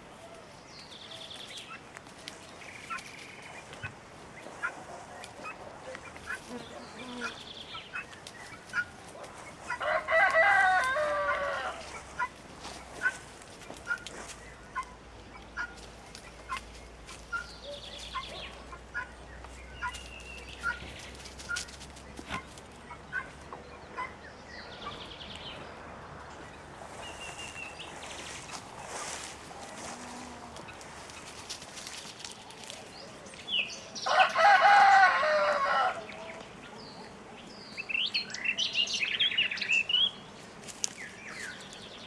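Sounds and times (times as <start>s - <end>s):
small birds chirping: 0.2s - 42.0s
rooster crowing: 9.7s - 12.2s, 34.0s - 36.3s.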